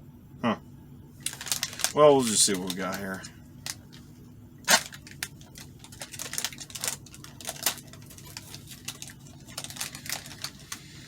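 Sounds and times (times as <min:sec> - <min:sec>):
sharp plastic crack: 0:01.2 - 0:03.8, 0:04.6 - 0:10.9
plastic pouch crinkling: 0:01.2 - 0:04.0, 0:04.6 - 0:11.0.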